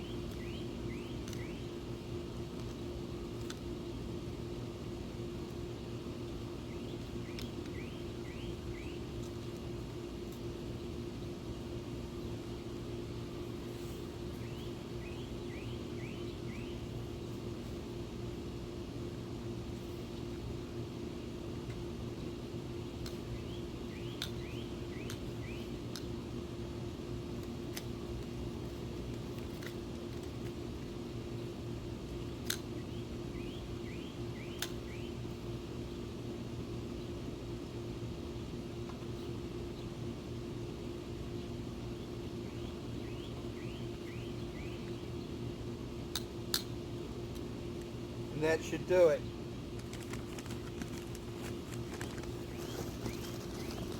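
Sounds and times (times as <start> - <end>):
bird chirping: 0.0 - 1.7, 6.6 - 9.1, 14.3 - 17.0, 23.2 - 25.8, 32.2 - 35.3, 41.3 - 45.4, 52.0 - 53.9
steady low hum: 0.0 - 53.9.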